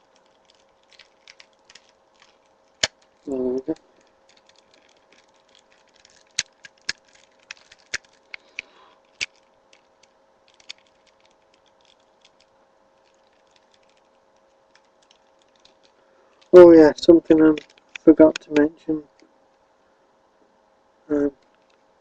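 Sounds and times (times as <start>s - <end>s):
plastic toy parts clicking: 0.0s - 16.5s, 17.6s - 18.6s
faint hum: 0.0s - 22.0s.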